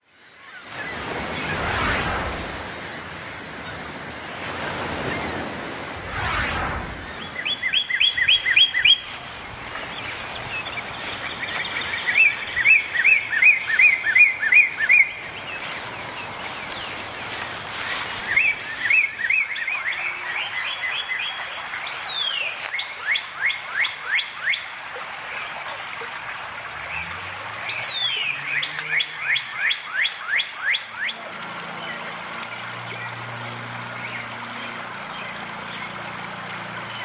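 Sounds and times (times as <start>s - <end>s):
stream babbling: 24.1s - 37.0s.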